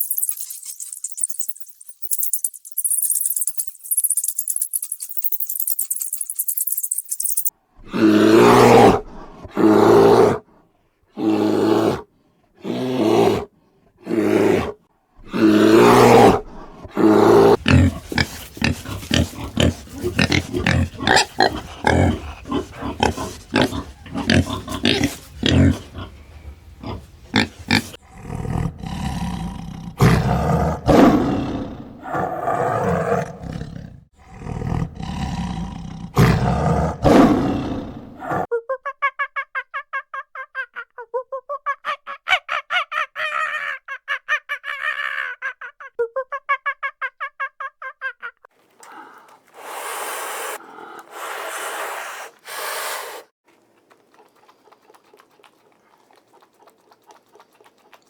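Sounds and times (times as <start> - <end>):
large animal roaring: 28.1 - 38.5.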